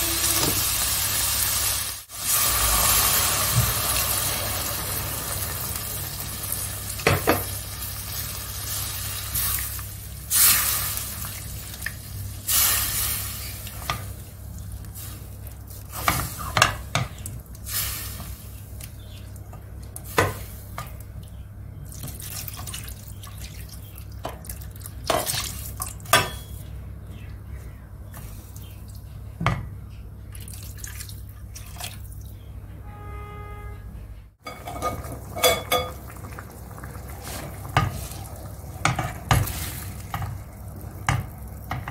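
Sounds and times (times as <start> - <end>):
steady low hum: 26.3 - 41.9
dishes and cutlery clinking: 34.4 - 36.0.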